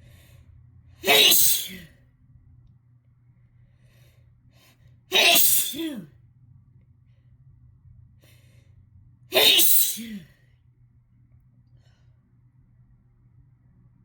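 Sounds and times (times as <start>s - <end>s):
person sneezing: 1.0s - 1.9s, 5.1s - 6.1s, 9.3s - 10.3s.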